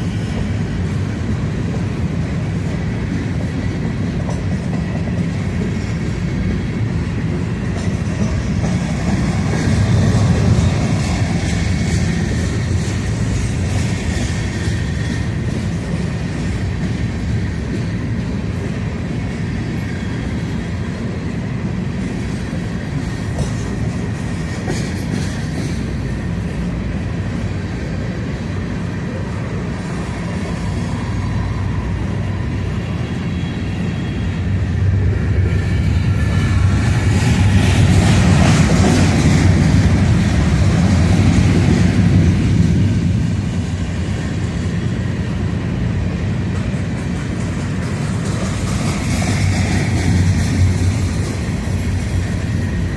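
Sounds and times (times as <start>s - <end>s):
freight train rumbling past: 0.0s - 52.9s
wheels clicking over rail joints: 1.2s - 19.2s, 22.0s - 27.4s, 35.4s - 52.9s.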